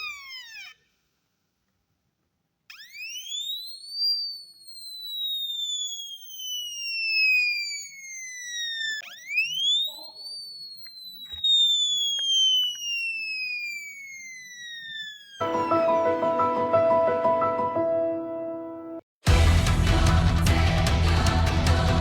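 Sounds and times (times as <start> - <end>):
electronic siren sweeping: 2.7 - 17.0.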